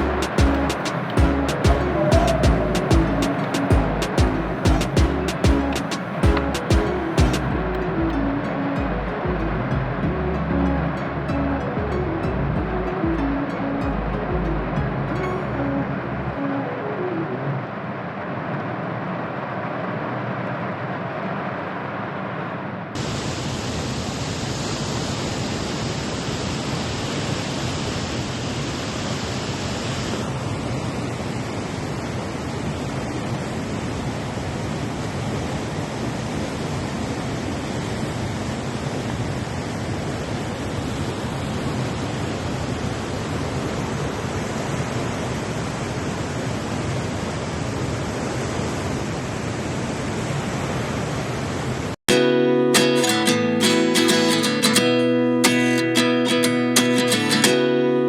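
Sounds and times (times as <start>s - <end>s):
heavy rain hissing: 0.0s - 7.7s, 23.0s - 30.9s.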